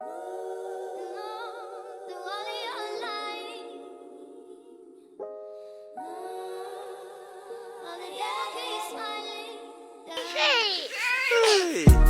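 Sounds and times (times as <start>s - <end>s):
music with singing voice: 10.2s - 12.0s.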